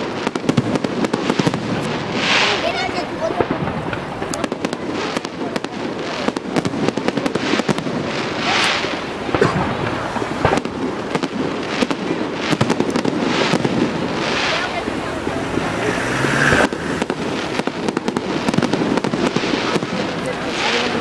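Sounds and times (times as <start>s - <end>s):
fireworks hissing crackle: 0.0s - 21.0s
fireworks popping and banging: 0.0s - 21.0s.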